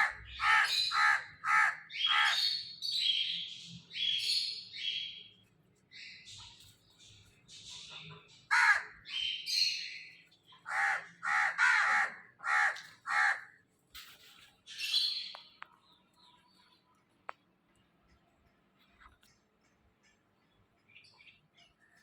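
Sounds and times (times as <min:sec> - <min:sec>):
crows cawing: 0:00.0 - 0:02.6, 0:08.5 - 0:09.1, 0:10.6 - 0:13.6
birds chirping: 0:00.0 - 0:22.0.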